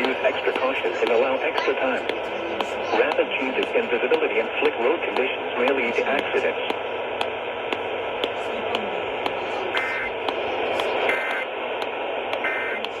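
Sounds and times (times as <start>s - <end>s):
radio static hiss: 0.0s - 13.0s
regular ticks: 0.0s - 13.0s.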